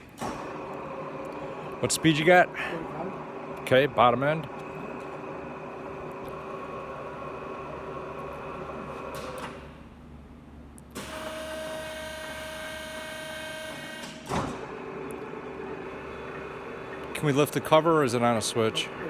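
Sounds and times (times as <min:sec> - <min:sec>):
lathe running with gear whine: 0:00.6 - 0:08.9, 0:14.8 - 0:19.0.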